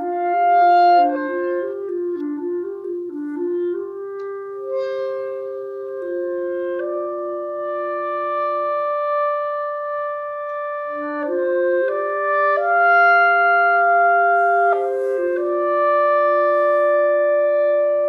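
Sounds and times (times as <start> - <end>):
clarinets holding long notes: 11.0 - 18.0.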